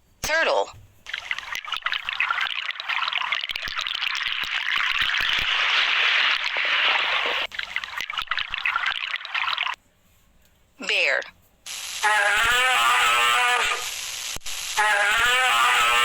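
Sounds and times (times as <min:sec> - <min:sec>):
water trickling and splashing: 0:01.0 - 0:09.8.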